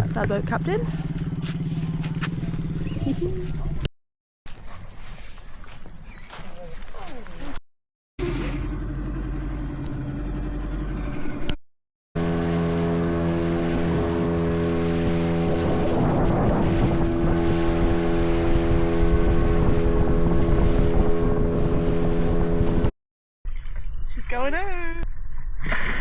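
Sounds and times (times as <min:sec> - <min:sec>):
motorboat engine humming: 0:00.0 - 0:03.9, 0:08.2 - 0:11.6, 0:12.2 - 0:22.9.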